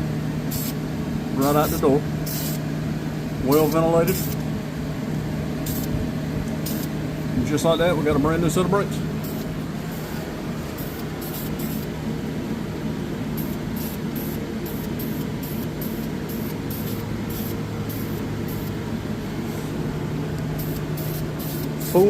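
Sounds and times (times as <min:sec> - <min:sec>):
electric fan humming: 0:00.0 - 0:22.0
aerosol spray can hissing: 0:00.5 - 0:00.8, 0:02.3 - 0:02.6, 0:05.7 - 0:05.9, 0:06.6 - 0:06.9, 0:09.2 - 0:11.9, 0:13.4 - 0:18.8, 0:20.6 - 0:22.0.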